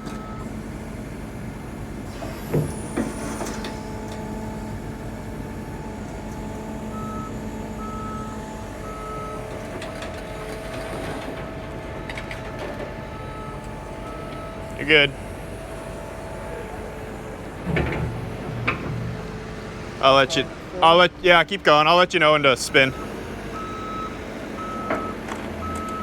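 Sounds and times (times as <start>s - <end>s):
heavy diesel machinery running: 0.0s - 26.0s
motion alarm beeping: 6.9s - 9.4s, 10.7s - 15.1s, 22.6s - 26.0s.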